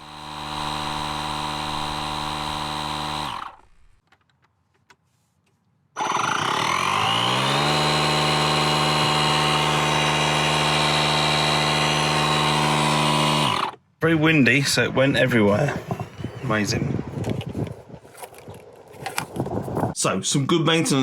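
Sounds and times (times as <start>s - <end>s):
electric tyre inflator humming: 0.0s - 4.0s, 6.0s - 13.8s.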